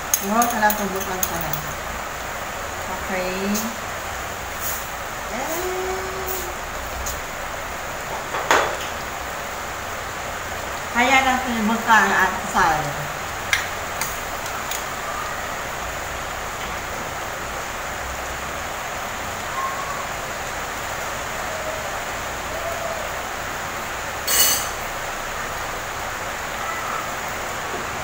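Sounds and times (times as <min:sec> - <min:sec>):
heavy rain falling: 0:00.0 - 0:28.0
sharp clink: 0:24.3 - 0:24.8.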